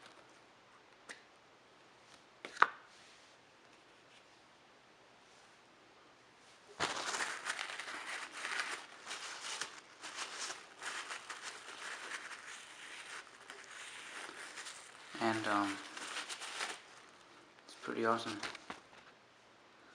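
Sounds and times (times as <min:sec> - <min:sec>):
packaging crinkling: 0:06.8 - 0:19.1.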